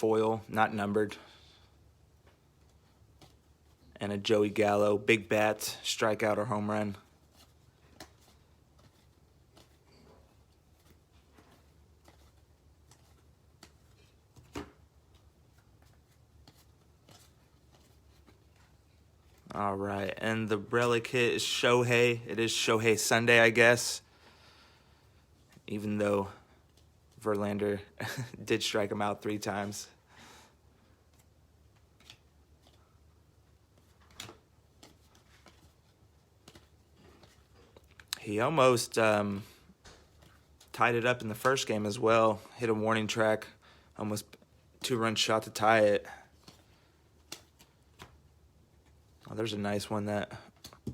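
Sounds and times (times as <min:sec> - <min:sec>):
low room hum: 0:00.0 - 0:50.9
cards sliding and tapping: 0:02.2 - 0:03.5, 0:07.3 - 0:19.5, 0:31.1 - 0:32.8, 0:33.7 - 0:38.1, 0:46.4 - 0:49.0, 0:50.5 - 0:50.9.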